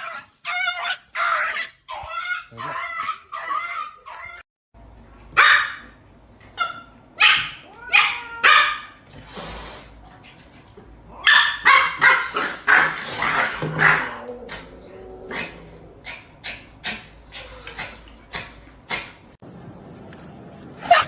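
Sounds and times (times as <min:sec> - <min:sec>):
dog barking: 0:05.4 - 0:06.0, 0:06.6 - 0:08.9, 0:11.2 - 0:13.0.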